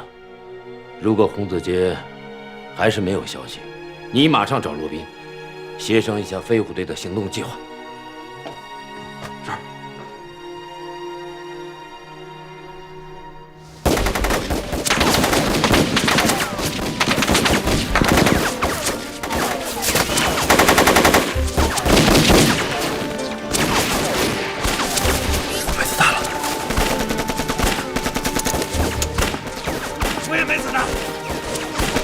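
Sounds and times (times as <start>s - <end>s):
machine-gun and rifle fire: 13.8s - 25.5s, 26.3s - 32.0s.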